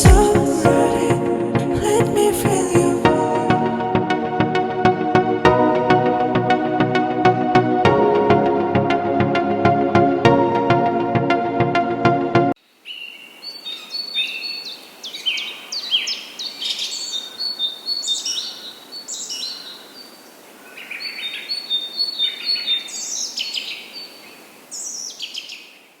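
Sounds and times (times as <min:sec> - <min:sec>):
nestlings chirping: 0:12.9 - 0:25.8.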